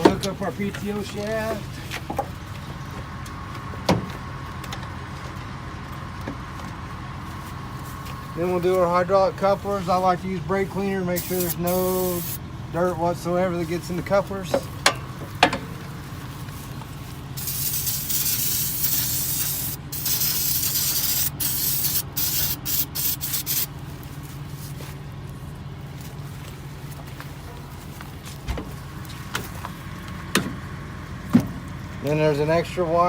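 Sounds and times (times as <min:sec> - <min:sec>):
engine idling: 0:00.0 - 0:33.0
aerosol spray bursts: 0:11.2 - 0:12.4, 0:17.4 - 0:23.7.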